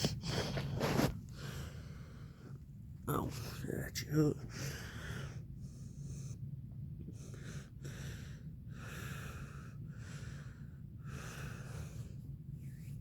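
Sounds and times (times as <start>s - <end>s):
person breathing noisily: 0.0s - 2.5s, 4.5s - 6.4s, 7.1s - 12.2s
steady low hum: 0.0s - 13.0s.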